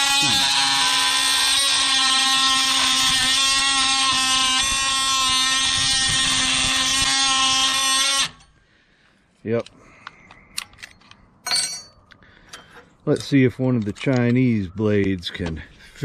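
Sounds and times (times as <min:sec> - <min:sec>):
oscillating multi-tool cutting metal: 0:00.0 - 0:08.5.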